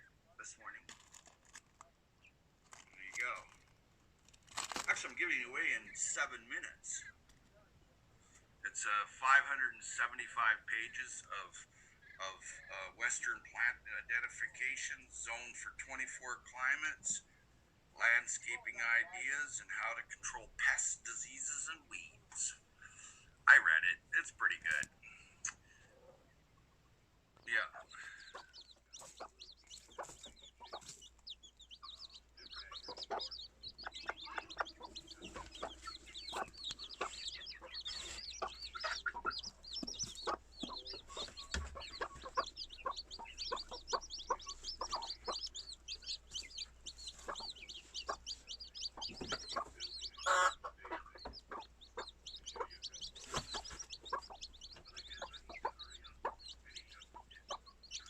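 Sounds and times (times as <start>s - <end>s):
chicks peeping and chirping: 0.5s - 7.0s, 26.0s - 58.0s
clucking: 27.7s - 58.0s.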